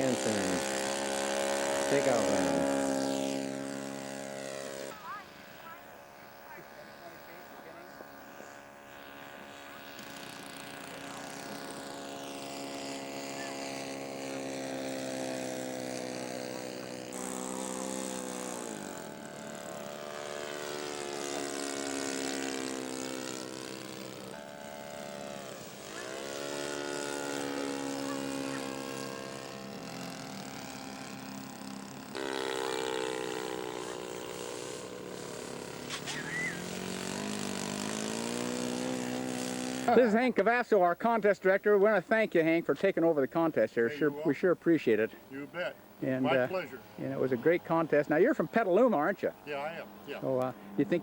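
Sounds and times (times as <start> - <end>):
model airplane engine passing by: 0.0 - 51.0.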